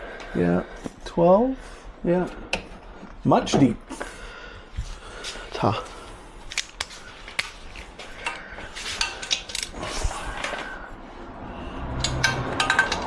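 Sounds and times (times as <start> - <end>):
metal tools clinking: 6.5 - 7.0, 7.8 - 10.0, 12.0 - 13.0.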